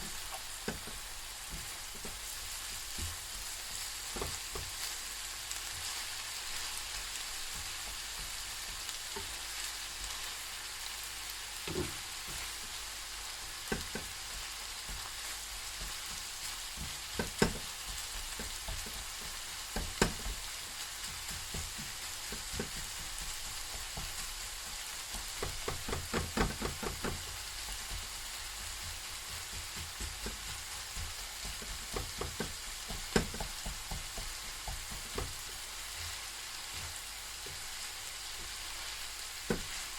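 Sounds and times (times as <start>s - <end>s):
beef sizzling in a pan: 0.0s - 39.9s
utensil knocking against pan: 0.6s - 2.2s, 13.6s - 15.1s, 15.8s - 20.5s, 21.1s - 24.2s, 25.1s - 28.1s, 28.7s - 35.6s, 39.5s - 39.8s.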